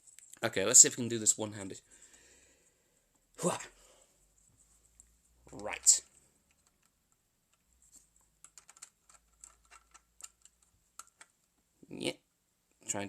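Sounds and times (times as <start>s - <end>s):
plastic toy bricks clicking: 8.4s - 11.4s.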